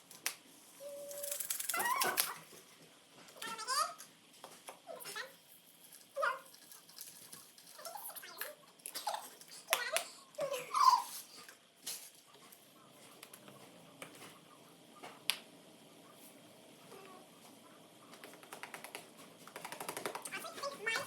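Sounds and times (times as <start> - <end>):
high-pitched vocal squeaks and giggles: 1.6 - 2.5, 7.8 - 9.7, 10.4 - 11.4.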